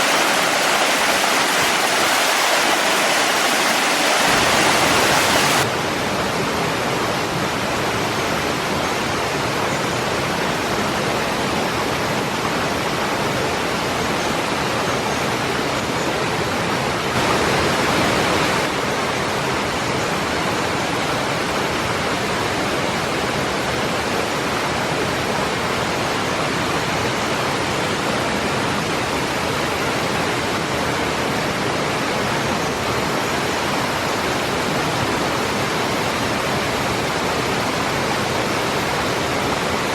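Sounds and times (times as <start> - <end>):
waterfall rushing: 0.0 - 6.4, 15.8 - 39.9.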